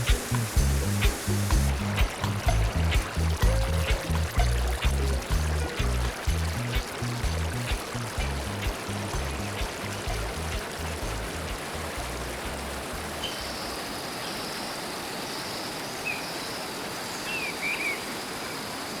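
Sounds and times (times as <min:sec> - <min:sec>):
thin steady high tone: 0:00.0 - 0:11.8
reggae bass line: 0:00.0 - 0:13.2
river water rushing: 0:00.0 - 0:19.0.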